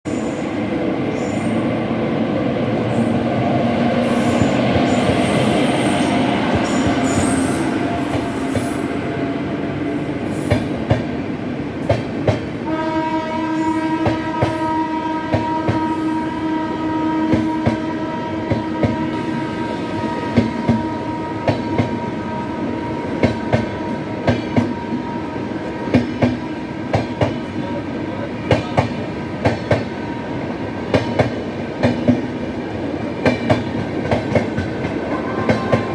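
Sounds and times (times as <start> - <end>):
train rumbling on rails: 0.0 - 35.9.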